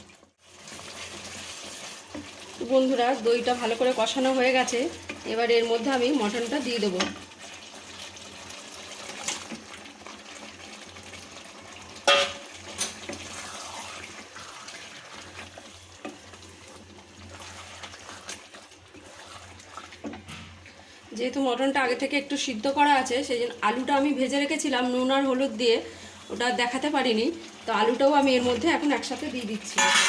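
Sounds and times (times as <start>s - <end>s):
utensil clinking against pan: 29.8s - 30.0s.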